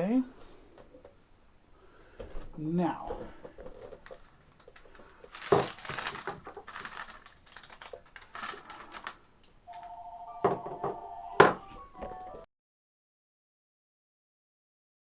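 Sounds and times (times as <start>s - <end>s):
plastic parts clicking and rustling: 3.1s - 10.7s.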